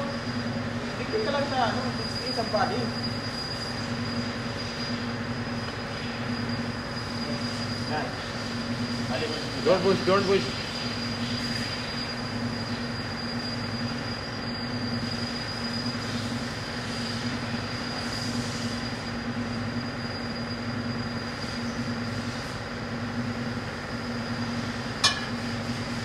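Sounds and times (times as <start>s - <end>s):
high-pitched whine: 0.0s - 26.0s
steady mechanical hum: 0.0s - 26.0s
sharp clack: 25.0s - 25.4s.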